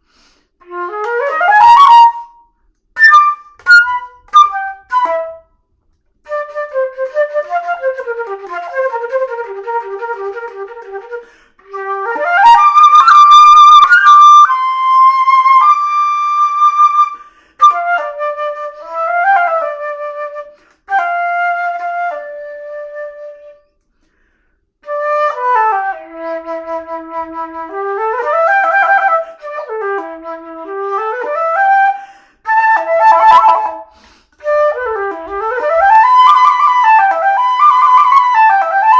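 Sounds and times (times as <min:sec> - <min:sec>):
solo flute playing: 0:00.1 - 0:23.8, 0:24.8 - 0:38.9.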